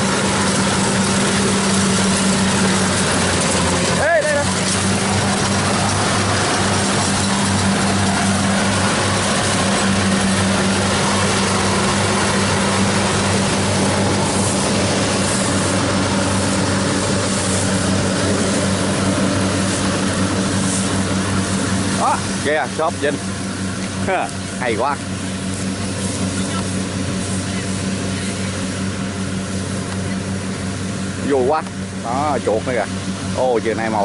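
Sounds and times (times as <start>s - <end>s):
combine harvester running: 0.0s - 34.0s.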